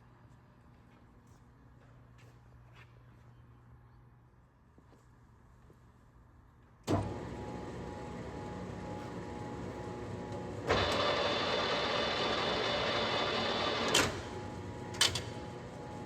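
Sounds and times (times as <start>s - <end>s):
lathe humming and whining: 6.9s - 16.0s.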